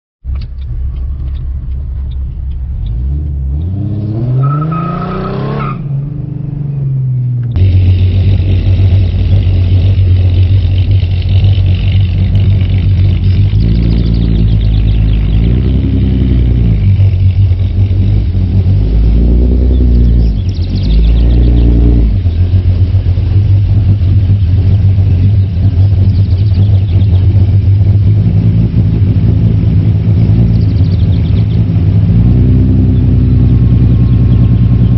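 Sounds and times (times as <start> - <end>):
engine throttle blips: 0.2 - 34.9
engine revving: 0.8 - 34.9
car exhaust idling loudly: 7.6 - 34.9.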